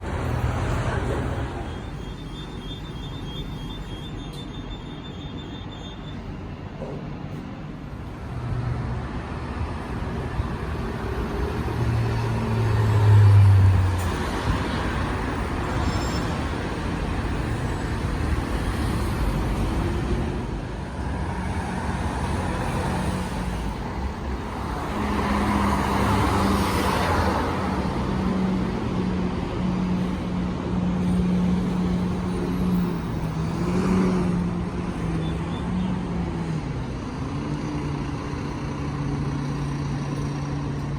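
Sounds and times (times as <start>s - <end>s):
cars and trucks driving past: 0.0s - 40.9s
vehicle passing with tyre noise: 8.2s - 40.9s.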